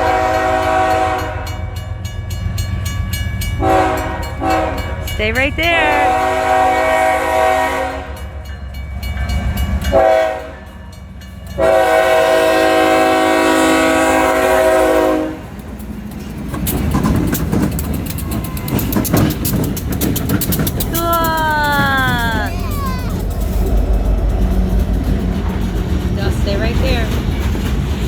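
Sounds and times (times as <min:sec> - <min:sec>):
locomotive air horn: 0:00.0 - 0:01.7, 0:03.6 - 0:05.0, 0:05.8 - 0:08.2, 0:09.9 - 0:10.7, 0:11.6 - 0:15.5
train rumbling past: 0:00.0 - 0:28.0
wheels clicking over rail joints: 0:15.2 - 0:28.0.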